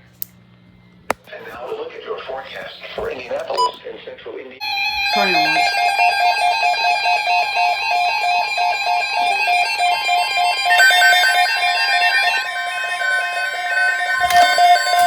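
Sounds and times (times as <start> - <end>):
weather radio alert beeping: 3.4 - 3.8.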